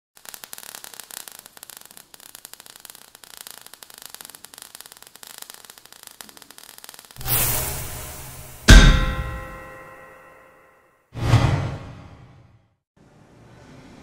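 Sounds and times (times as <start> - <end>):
crackling clicks: 0.2 - 7.2
static hiss: 0.2 - 8.7.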